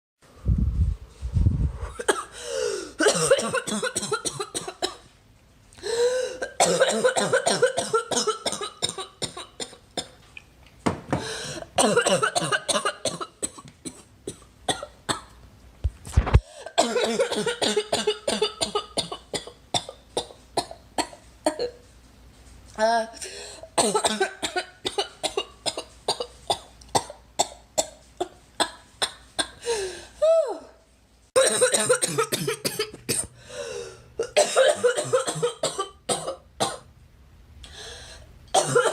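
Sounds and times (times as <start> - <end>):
girl coughing: 1.9 - 2.4, 3.0 - 5.0, 6.3 - 9.8, 11.8 - 15.2, 16.5 - 21.8, 23.8 - 29.6, 31.4 - 33.3, 34.2 - 36.8, 38.6 - 38.9.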